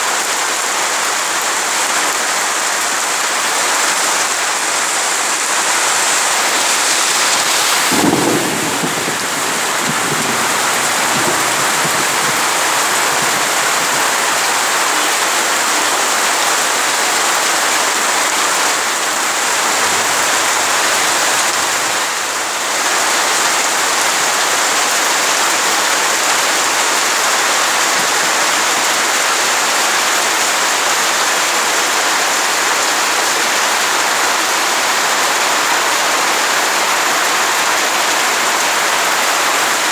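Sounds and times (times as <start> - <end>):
heavy rain falling: 0.0 - 39.9
low rumble of thunder: 5.5 - 14.4, 19.3 - 22.2.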